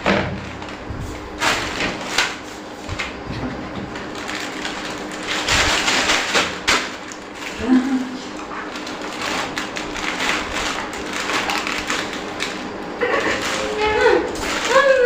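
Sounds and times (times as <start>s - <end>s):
plastic chip packets crinkling: 4.0s - 15.0s.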